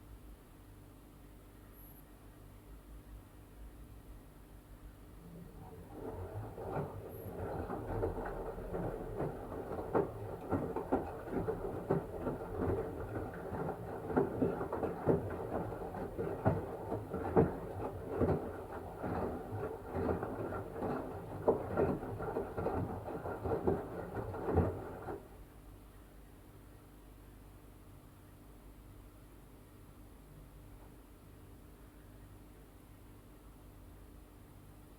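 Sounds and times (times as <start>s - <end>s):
washing machine drum tumbling: 5.1s - 25.4s
water sloshing: 5.2s - 25.3s.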